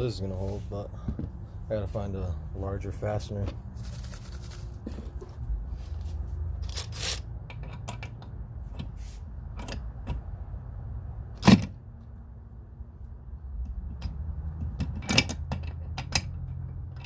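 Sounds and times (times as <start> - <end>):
tools clicking and clacking: 6.6 - 8.9.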